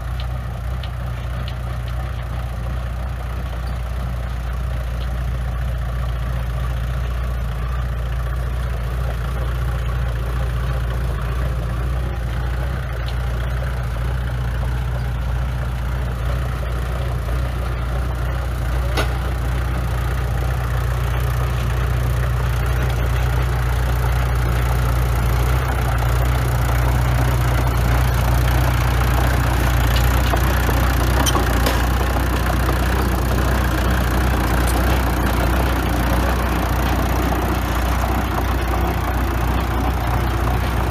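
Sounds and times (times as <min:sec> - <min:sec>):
diesel engine droning: 0:00.0 - 0:40.9.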